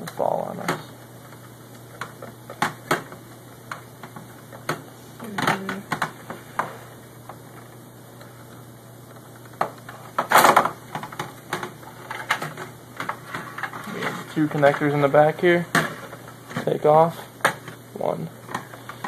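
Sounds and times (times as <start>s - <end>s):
disc drive clicks and knocks: 0.0s - 16.8s, 17.4s - 17.8s.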